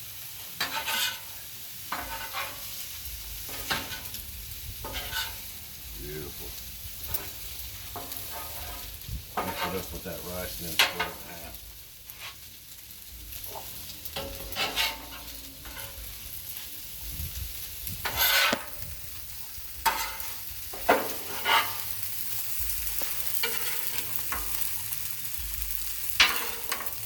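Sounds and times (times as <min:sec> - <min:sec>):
food sizzling on a griddle: 0:00.0 - 0:27.0
spatulas scraping steel: 0:00.6 - 0:01.3, 0:01.9 - 0:02.8, 0:03.5 - 0:04.2, 0:04.8 - 0:05.5, 0:07.1 - 0:10.0, 0:13.5 - 0:16.1, 0:18.0 - 0:18.8, 0:19.8 - 0:22.0, 0:23.0 - 0:24.8, 0:26.1 - 0:27.0.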